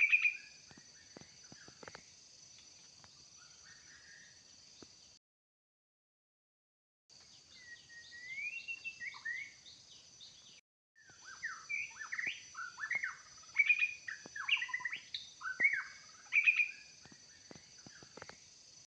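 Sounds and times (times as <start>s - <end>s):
bird singing whistled phrases: 0.0s - 0.6s, 7.5s - 9.8s, 11.0s - 17.2s.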